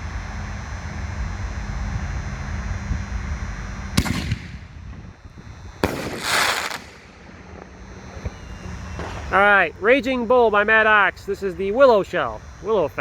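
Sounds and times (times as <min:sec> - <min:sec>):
firework launch bang: 0:04.0 - 0:05.0, 0:05.8 - 0:09.3
firework shell crackling: 0:05.7 - 0:09.6.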